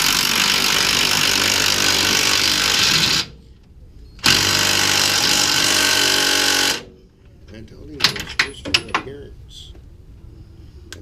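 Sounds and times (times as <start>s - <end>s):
impact wrench hammering: 4.2s - 6.9s.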